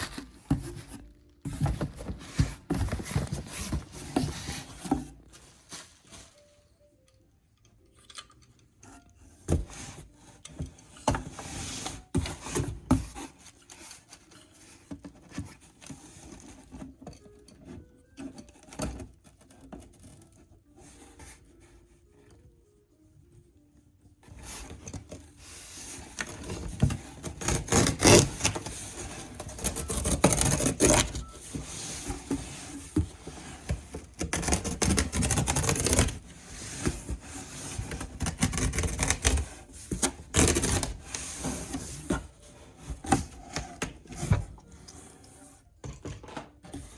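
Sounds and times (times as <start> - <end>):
box knocks and scraping: 0.0 - 5.2.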